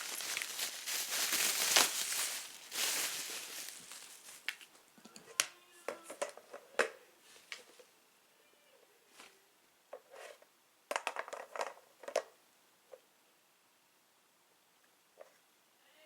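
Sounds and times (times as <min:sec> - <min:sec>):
paper rustling and crinkling: 0:00.0 - 0:04.7.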